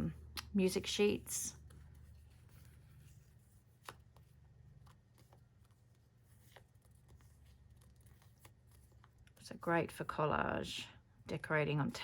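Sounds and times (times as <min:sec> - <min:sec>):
paper stickers rustling: 0:01.6 - 0:09.5.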